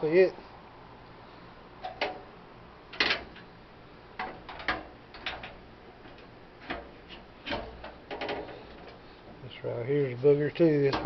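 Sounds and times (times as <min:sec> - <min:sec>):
metal camp stove parts clicking: 0:01.8 - 0:02.2, 0:04.2 - 0:09.0.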